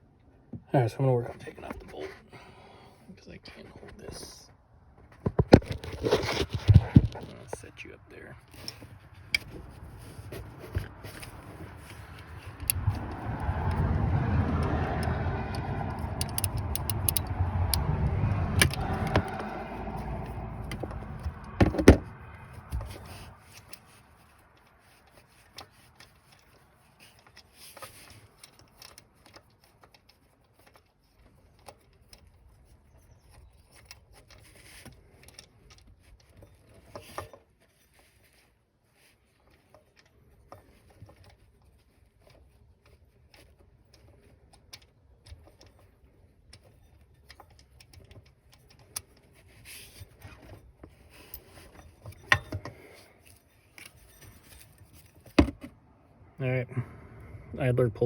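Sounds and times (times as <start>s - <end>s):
hand tools clicking on metal: 14.6s - 17.9s.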